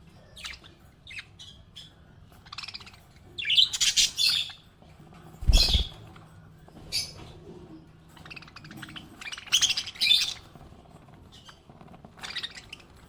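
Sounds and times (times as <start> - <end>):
parrot chirping: 5.4 - 6.0.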